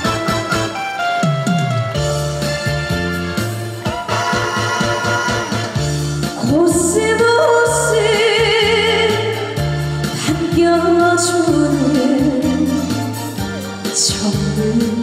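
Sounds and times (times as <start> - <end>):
instrumental accompaniment with bass: 0.0 - 15.0
woman singing with vibrato: 6.4 - 13.1, 14.0 - 15.0.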